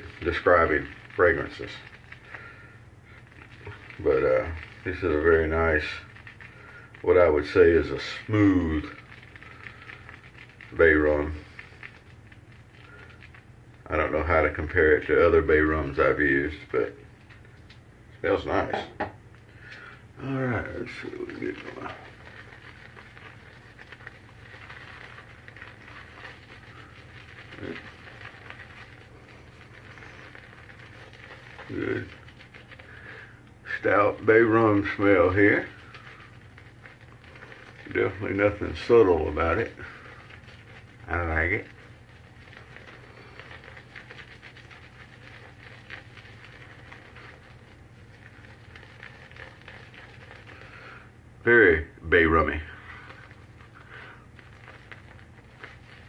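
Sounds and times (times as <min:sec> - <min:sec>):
shaving brush swishing lather: 0:00.0 - 0:02.2, 0:03.1 - 0:13.0, 0:20.2 - 0:50.9
steady low hum: 0:00.0 - 0:56.0.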